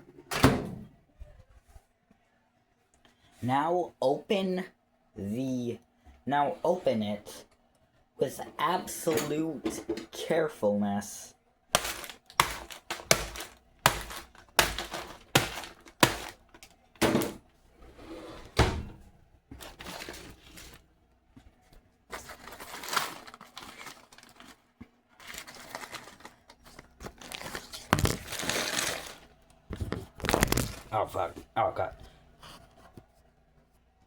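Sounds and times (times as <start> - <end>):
paper bag crinkling and tearing: 11.7 - 16.7, 19.6 - 20.8, 22.1 - 31.3.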